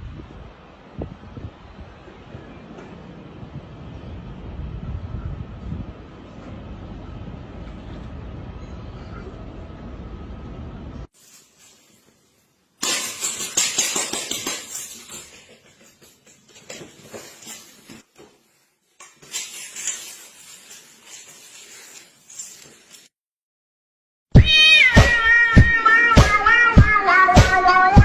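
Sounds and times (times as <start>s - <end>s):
music with singing: 26.2s - 28.0s.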